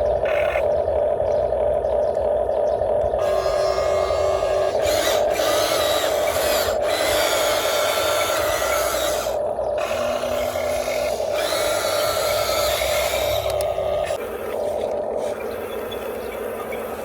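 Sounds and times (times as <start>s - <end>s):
small electric motors whining: 0.0s - 17.0s
high-pitched gear grinding: 3.2s - 17.0s.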